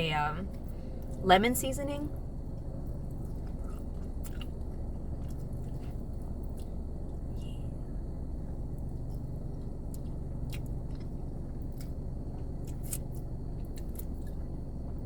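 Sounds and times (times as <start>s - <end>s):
steady low hum: 0.0s - 15.0s
close chewing with mouth smacks: 2.5s - 7.6s, 8.6s - 15.0s.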